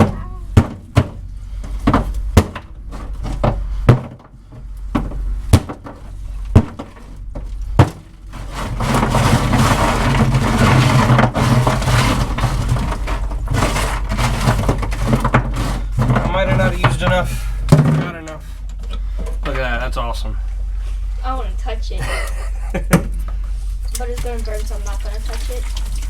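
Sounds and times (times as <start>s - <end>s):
sharp knocks: 0.0s - 18.4s
dry ice fizzing and bubbling: 23.7s - 26.0s.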